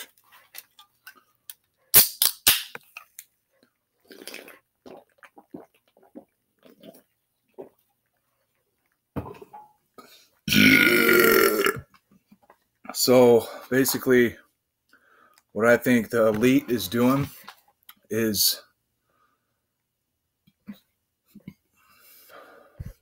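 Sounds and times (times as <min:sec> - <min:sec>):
faint small noises: 0:00.0 - 0:02.0, 0:02.7 - 0:23.0
man belching: 0:10.5 - 0:11.9.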